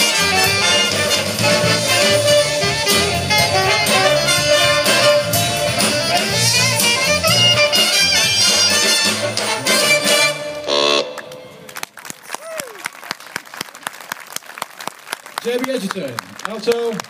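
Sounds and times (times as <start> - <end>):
big band playing jazz: 0.0 - 11.8.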